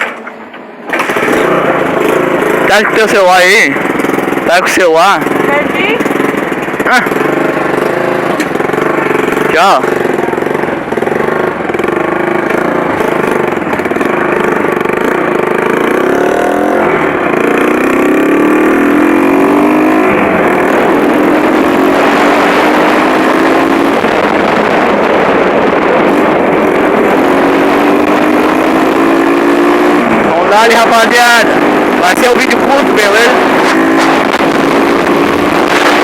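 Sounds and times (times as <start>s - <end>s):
motorcycle engine accelerating: 0.0s - 36.0s.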